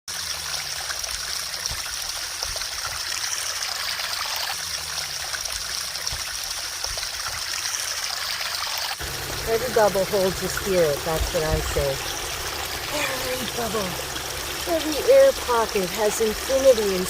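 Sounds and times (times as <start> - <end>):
creek water rushing: 0.2 - 17.0.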